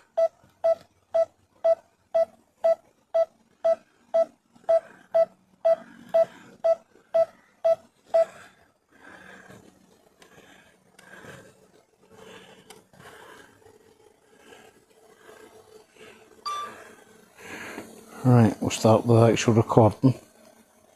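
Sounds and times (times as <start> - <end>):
drone controller warning beeps: 0.2 - 8.3, 16.5 - 16.8.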